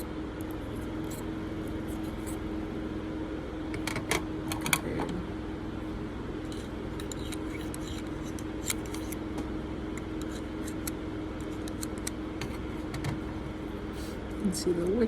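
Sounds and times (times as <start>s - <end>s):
room fans humming: 0.0s - 15.0s.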